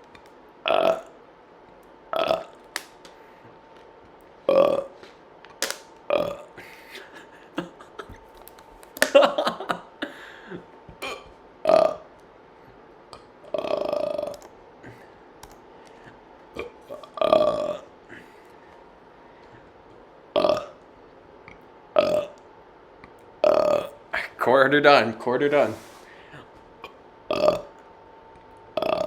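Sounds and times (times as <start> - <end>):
man burping: 0.6 - 1.2, 2.1 - 2.6, 4.4 - 5.0, 6.1 - 8.2, 9.0 - 12.1, 13.4 - 15.1, 16.5 - 18.4, 20.3 - 20.8, 22.0 - 22.4, 23.4 - 24.4, 26.3 - 27.8, 28.8 - 29.0.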